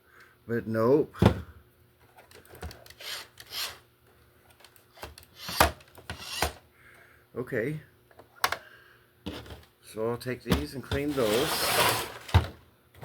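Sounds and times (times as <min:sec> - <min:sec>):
plastic rubbing and scraping: 0:10.6 - 0:13.0.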